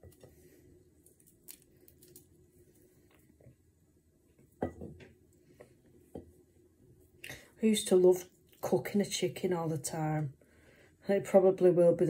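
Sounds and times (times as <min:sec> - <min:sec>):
chicken being pulled apart: 0:01.0 - 0:02.3.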